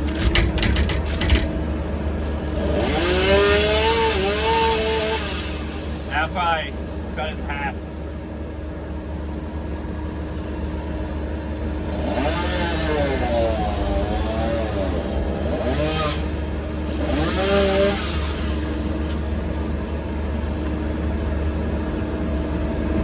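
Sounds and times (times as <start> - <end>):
engine revving: 2.4 - 7.8, 11.8 - 19.2.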